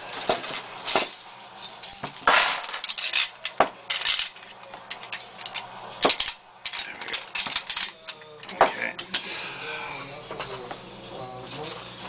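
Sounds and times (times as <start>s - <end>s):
metal clatter: 0.1s - 9.1s
metal clicks and clinks: 2.8s - 9.2s.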